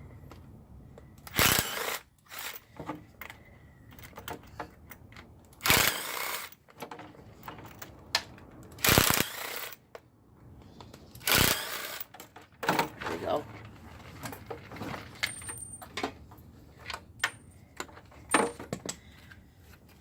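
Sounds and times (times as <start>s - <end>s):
clicks and knocks of tool handling: 12.1s - 20.0s.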